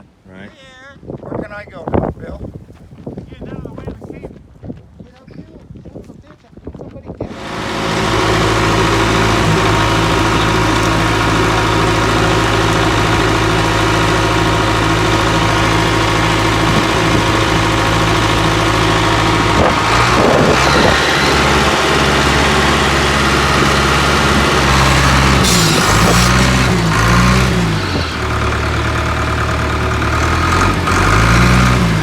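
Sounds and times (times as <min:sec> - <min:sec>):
diesel engine idling: 0:07.3 - 0:32.0.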